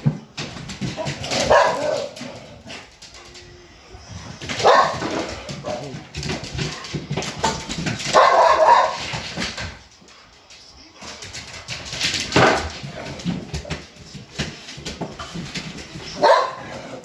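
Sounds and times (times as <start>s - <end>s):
dogs barking: 1.0s - 2.8s, 4.5s - 5.9s, 7.4s - 9.2s, 16.1s - 17.0s.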